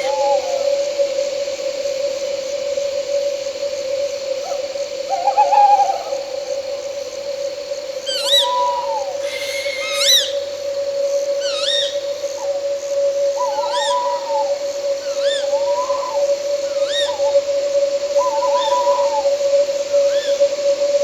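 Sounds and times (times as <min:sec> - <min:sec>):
owl calling: 0:00.0 - 0:00.8, 0:05.1 - 0:06.2, 0:08.1 - 0:12.6, 0:13.3 - 0:17.4, 0:18.2 - 0:19.4, 0:20.0 - 0:20.4
faint high insect trill: 0:00.0 - 0:21.0.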